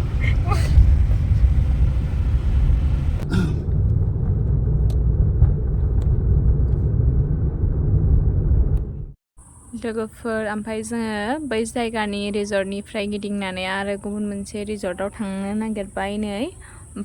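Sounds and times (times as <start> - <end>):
loud low rumble: 0.0 - 9.2.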